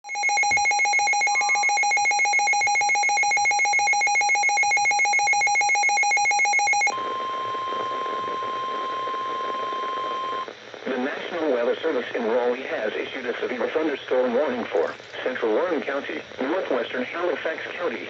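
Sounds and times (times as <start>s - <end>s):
steady alarm tone: 0.0s - 10.5s.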